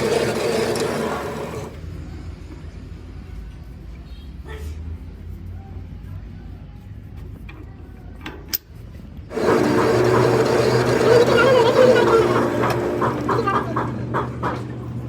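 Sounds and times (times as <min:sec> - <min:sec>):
loud motor-driven machine: 0:00.0 - 0:01.9, 0:09.3 - 0:15.0.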